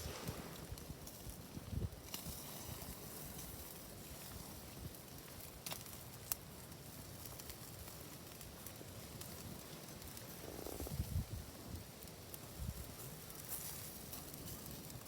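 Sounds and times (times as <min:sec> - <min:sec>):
fire pops: 0:00.0 - 0:03.6
campfire crackling: 0:00.0 - 0:15.0.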